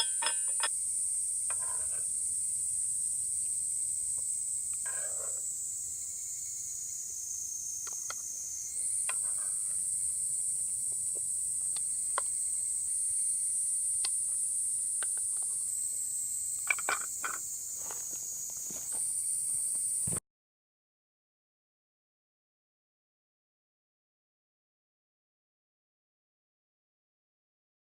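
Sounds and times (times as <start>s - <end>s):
insects singing: 0.0s - 20.2s.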